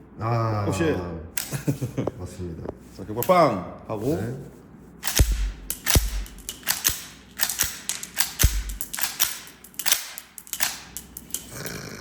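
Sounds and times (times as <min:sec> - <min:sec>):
metallic clicks of gun action: 0:05.0 - 0:11.5
heavier knocks: 0:05.2 - 0:06.5, 0:08.4 - 0:08.9.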